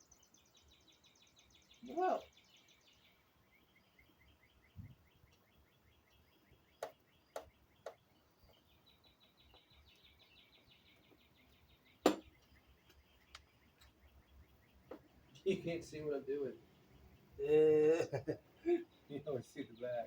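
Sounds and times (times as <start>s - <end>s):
sharp knock of parts handled: 12.1s - 12.3s.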